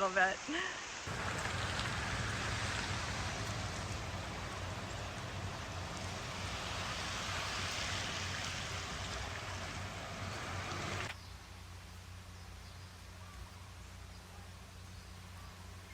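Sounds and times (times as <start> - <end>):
running water: 0.0 - 11.2.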